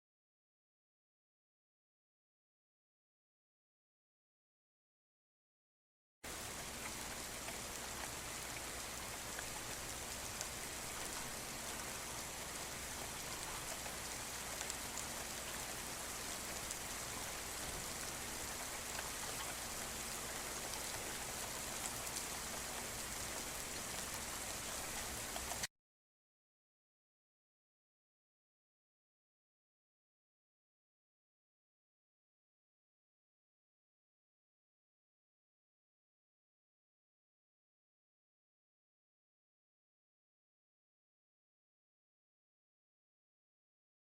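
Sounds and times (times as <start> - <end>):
steady rain falling: 6.3 - 25.7.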